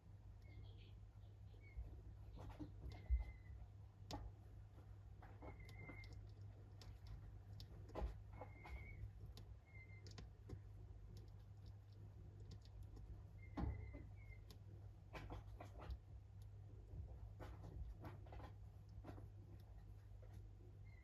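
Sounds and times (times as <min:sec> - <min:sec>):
chick tapping eggshell: 0:05.2 - 0:16.6.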